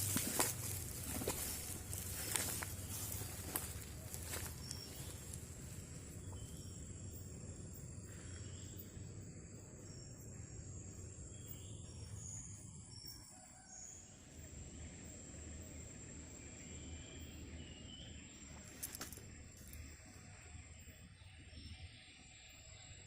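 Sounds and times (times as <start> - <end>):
crickets buzzing: 0.0 - 23.0.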